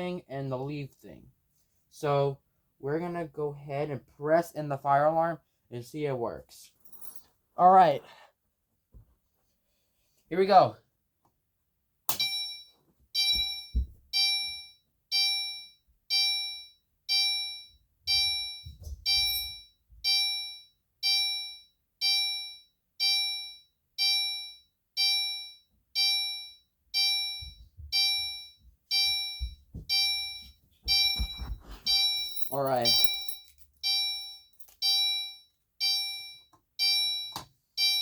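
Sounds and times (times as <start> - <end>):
fire alarm chime dings: 12.1 - 38.0.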